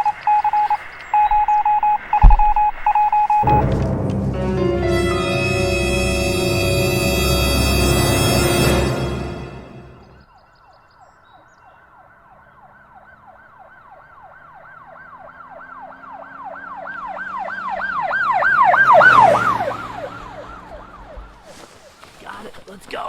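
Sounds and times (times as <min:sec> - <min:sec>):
emergency siren yelping: 0:12.0 - 0:21.6.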